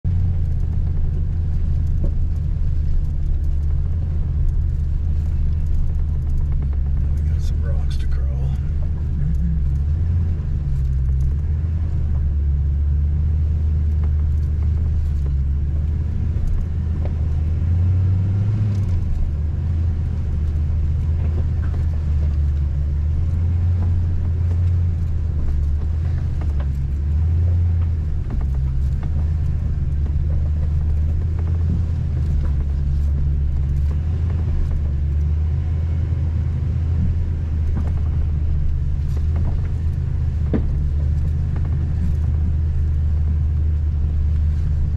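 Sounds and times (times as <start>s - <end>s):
pickup truck engine rumble: 0.0s - 44.9s
faint clicks and knocks: 0.1s - 11.4s, 20.1s - 35.5s, 36.8s - 44.9s.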